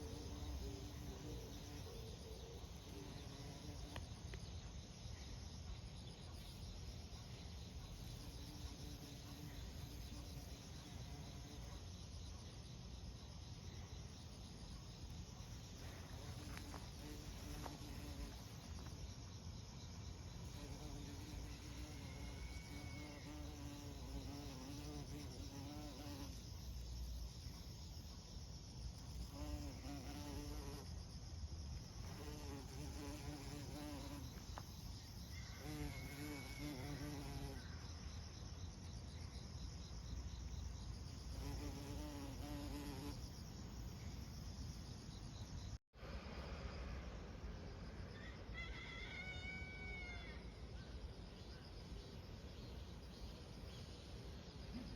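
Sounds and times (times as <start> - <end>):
flying insect buzzing: 2.8 - 4.2, 7.9 - 11.7, 15.7 - 18.9, 20.3 - 26.7, 28.7 - 31.0, 31.9 - 37.8, 40.6 - 44.6.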